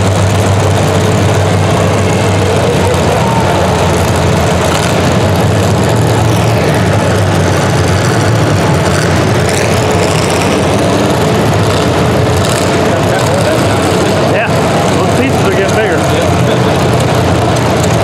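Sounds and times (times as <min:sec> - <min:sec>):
vehicle engine idling rumble: 0:00.0 - 0:18.0.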